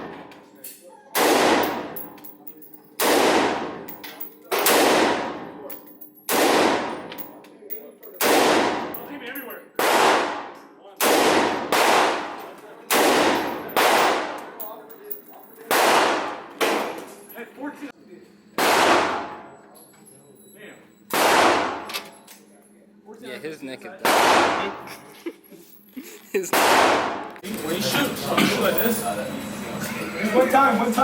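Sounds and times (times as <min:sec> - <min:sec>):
gunshots: 0:01.2 - 0:02.0, 0:03.0 - 0:03.8, 0:04.5 - 0:05.4, 0:06.3 - 0:07.1, 0:08.2 - 0:09.0, 0:09.8 - 0:14.4, 0:15.7 - 0:17.0, 0:18.6 - 0:19.4, 0:21.1 - 0:21.9, 0:24.0 - 0:24.8, 0:26.5 - 0:27.4.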